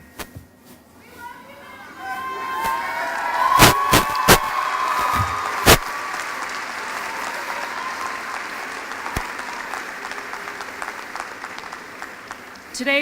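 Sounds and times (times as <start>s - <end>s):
large crowd applauding: 2.0s - 13.0s
loud sharp bangs: 3.5s - 5.9s.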